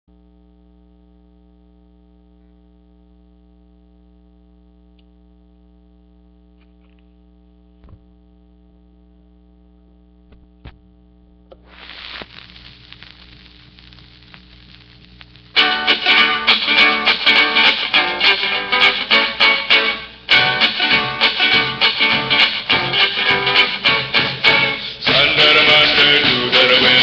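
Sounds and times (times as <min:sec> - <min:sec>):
electrical mains hum: 0:00.1 - 0:25.0
music: 0:15.5 - 0:27.0.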